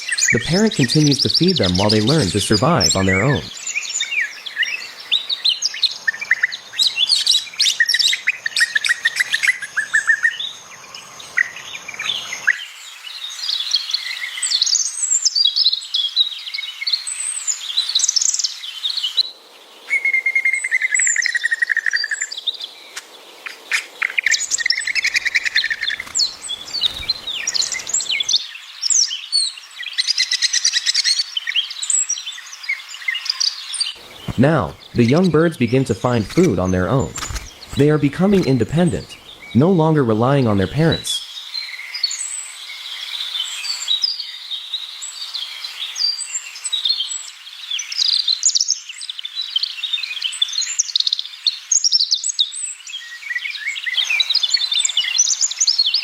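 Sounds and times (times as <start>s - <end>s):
small songbirds chirping: 0.0s - 56.0s.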